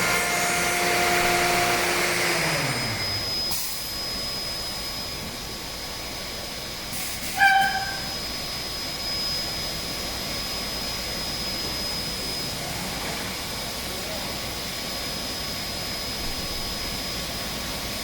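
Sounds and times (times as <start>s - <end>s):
machine running with high whine: 0.0s - 18.0s
loud squeal: 7.2s - 9.6s.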